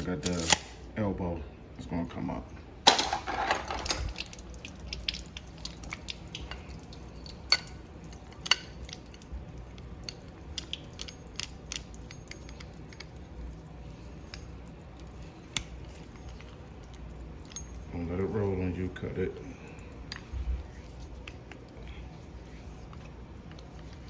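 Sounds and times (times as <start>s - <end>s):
pipe and tools clicking: 2.9s - 13.6s.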